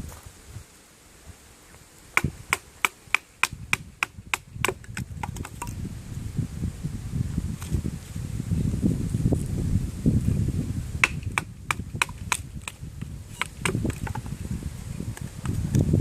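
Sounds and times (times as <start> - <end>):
wood rustling: 2.1 - 5.8, 11.0 - 15.6
knife chopping wood: 2.2 - 5.8, 11.0 - 14.3.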